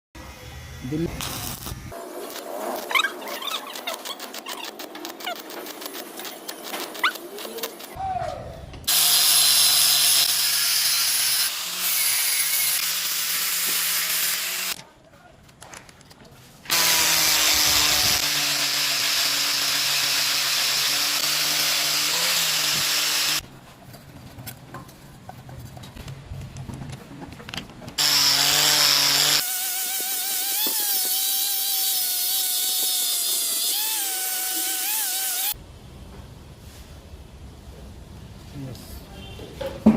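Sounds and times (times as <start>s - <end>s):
angle grinder grinding metal: 0.2s - 8.0s, 8.9s - 14.8s, 16.7s - 23.4s, 28.0s - 35.6s.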